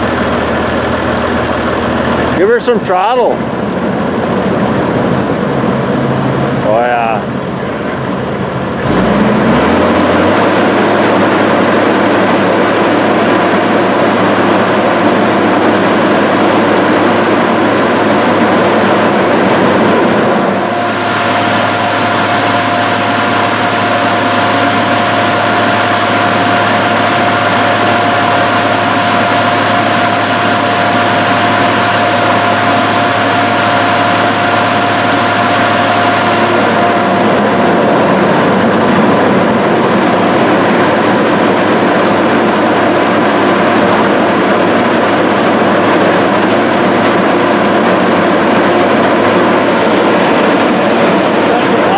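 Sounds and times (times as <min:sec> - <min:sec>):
cooling fan blowing: 0:00.0 - 0:51.9
diesel engine running: 0:00.0 - 0:51.9
steady whine: 0:00.0 - 0:51.9.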